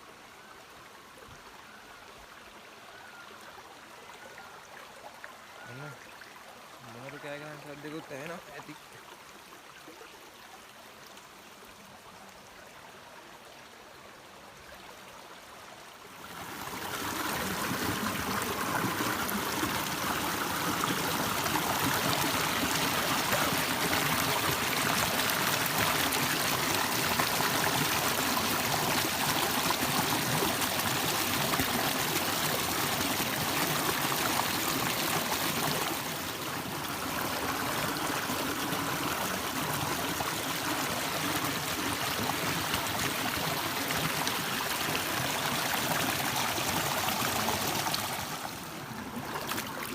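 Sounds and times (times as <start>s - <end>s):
river water over rocks: 0.0s - 49.9s.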